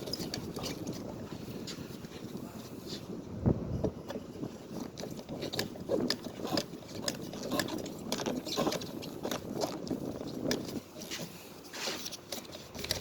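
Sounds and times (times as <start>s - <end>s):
screwdriver clicks and scrapes: 5.0s - 13.0s.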